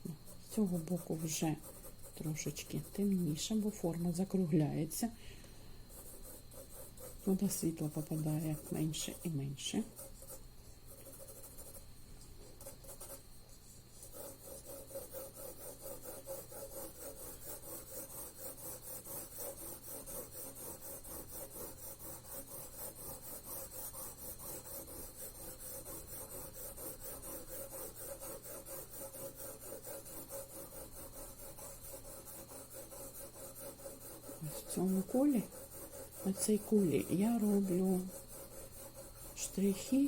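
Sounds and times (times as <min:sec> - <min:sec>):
pencil hatching on paper: 0:00.0 - 0:04.5, 0:05.8 - 0:40.0.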